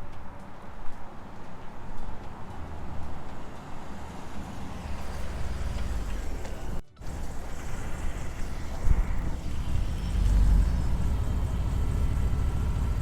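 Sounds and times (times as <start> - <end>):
vehicle engine rumble: 4.3 - 13.0.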